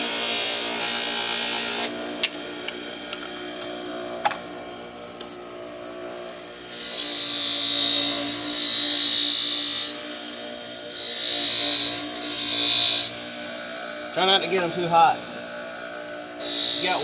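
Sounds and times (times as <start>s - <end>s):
knife grinding on buffing wheel: 0.0s - 17.0s
buffing wheel motor running: 13.1s - 17.0s.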